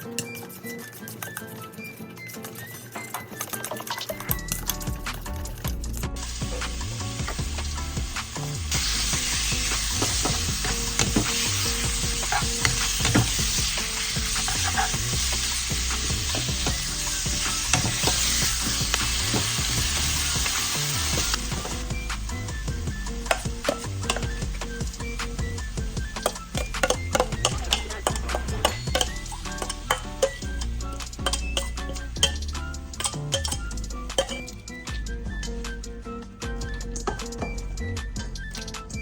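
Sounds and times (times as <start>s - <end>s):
meat sizzling in a pan: 6.2s - 34.5s
utensil clicking against pan: 9.9s - 19.7s, 23.2s - 24.5s, 26.1s - 34.6s.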